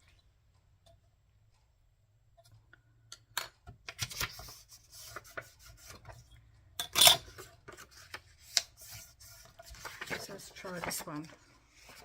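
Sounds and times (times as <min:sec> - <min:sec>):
paper sheets sliding: 0:07.7 - 0:12.0.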